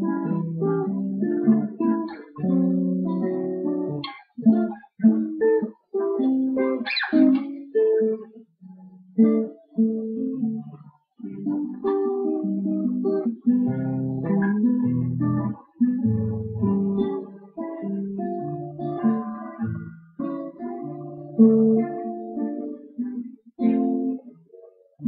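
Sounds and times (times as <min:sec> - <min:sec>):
guitar plucked notes and chords: 0:00.0 - 0:25.0.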